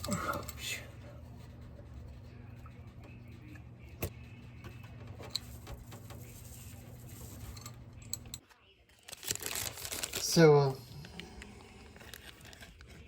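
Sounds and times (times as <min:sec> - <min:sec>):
fuel pump electric hum: 0:00.0 - 0:08.4.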